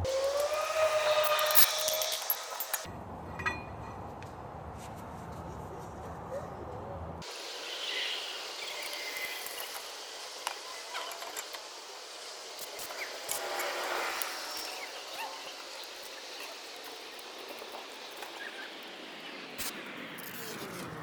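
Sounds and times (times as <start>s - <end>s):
birds chirping: 12.6s - 19.7s.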